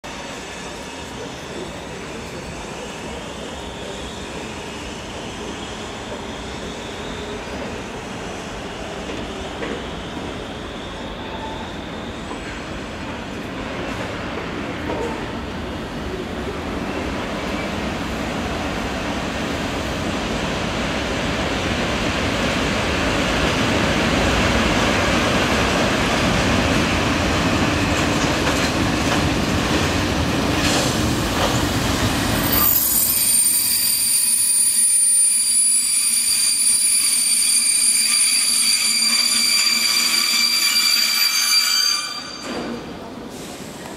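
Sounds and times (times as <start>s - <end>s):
freight train rumbling on rails: 0.0s - 43.9s
high wheel squeals: 32.4s - 42.8s.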